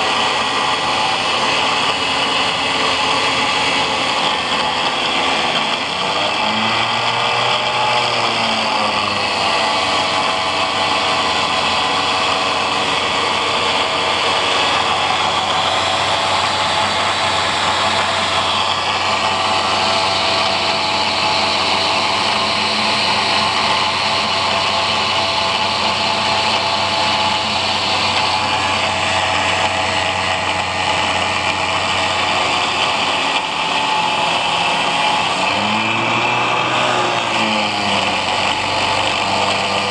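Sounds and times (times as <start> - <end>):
angle grinder running: 0.0 - 39.9.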